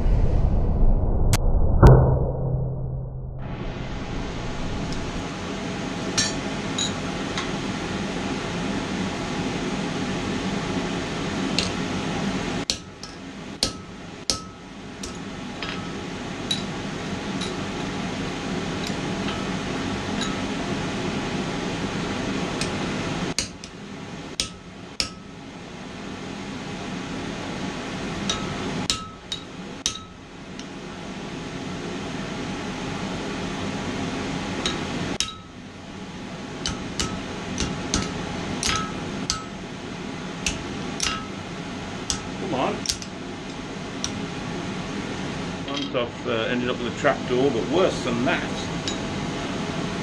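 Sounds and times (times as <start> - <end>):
steady rushing noise: 0.0 - 7.9
low hum: 0.0 - 50.0
hammer tapping on anvil: 6.2 - 7.5, 11.6 - 11.8, 12.7 - 16.7, 23.4 - 23.8, 24.4 - 25.3, 28.2 - 30.7, 34.6 - 35.6, 36.6 - 39.6, 40.4 - 41.4, 42.1 - 43.1.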